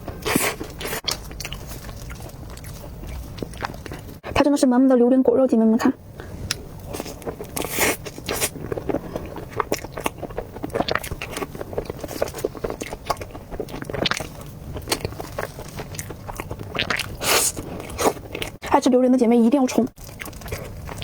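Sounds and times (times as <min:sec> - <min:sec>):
wet chewing and lip smacks: 0:00.1 - 0:04.2, 0:06.4 - 0:18.6.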